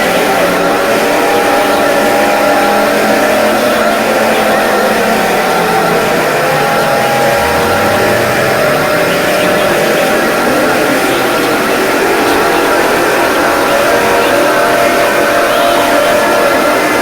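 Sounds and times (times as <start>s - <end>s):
harsh distorted alarm tones: 5.6s - 11.3s
low tone sliding down: 6.3s - 11.1s.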